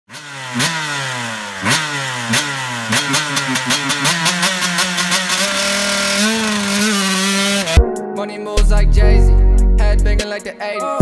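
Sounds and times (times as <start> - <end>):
motocross bike engine revving: 0.1 - 7.8
sharp exhaust pops: 0.1 - 7.8.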